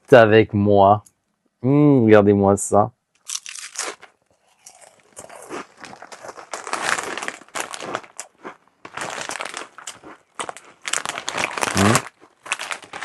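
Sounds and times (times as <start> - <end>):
crisp packet rustling: 3.2 - 13.0.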